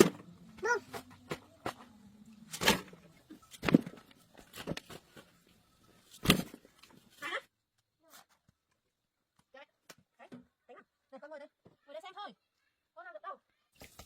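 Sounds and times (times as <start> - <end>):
faint low hum: 0.0 - 7.1.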